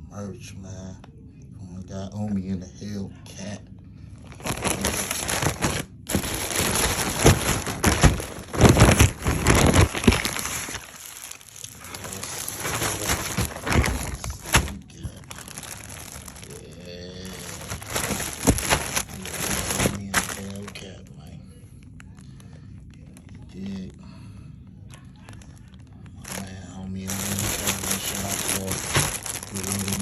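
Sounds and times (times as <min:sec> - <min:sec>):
packaging crinkling and rustling: 0:04.2 - 0:21.0, 0:24.9 - 0:30.0.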